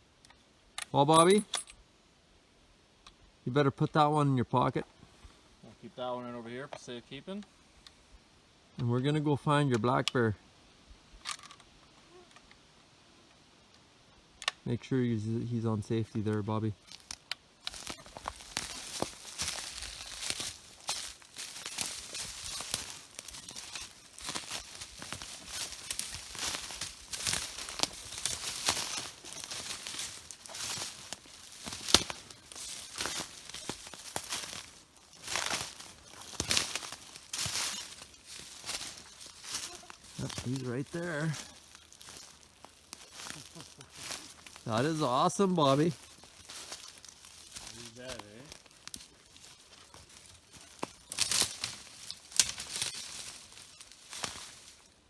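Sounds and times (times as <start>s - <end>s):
footsteps crunching through brush: 16.1s - 55.0s.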